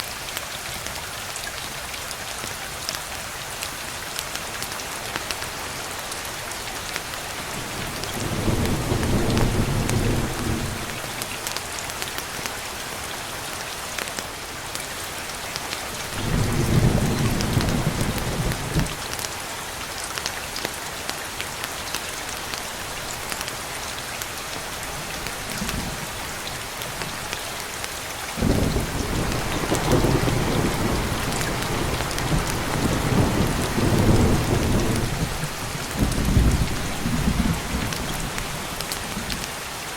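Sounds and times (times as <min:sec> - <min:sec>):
steady rain: 0:00.0 - 0:39.9
thunder rumbling: 0:08.0 - 0:11.1, 0:16.2 - 0:19.0, 0:28.4 - 0:39.4.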